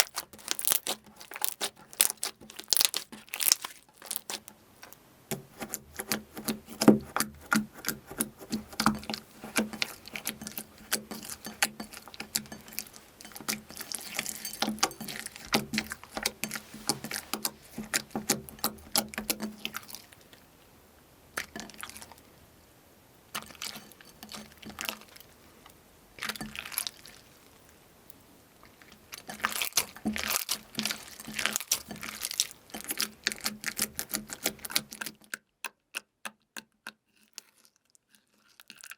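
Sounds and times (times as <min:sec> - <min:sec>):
crunchy slime crackling: 0:00.0 - 0:05.0, 0:05.6 - 0:20.3, 0:26.2 - 0:27.5, 0:28.8 - 0:35.1.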